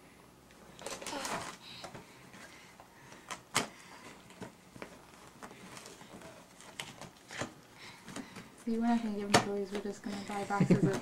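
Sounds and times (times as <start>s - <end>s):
crackers shifting in box: 0.8s - 1.6s.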